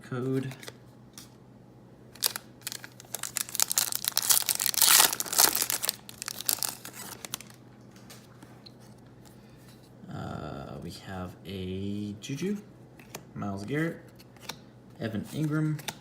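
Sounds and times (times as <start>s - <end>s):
wrapper torn open and crinkled: 2.2s - 7.6s.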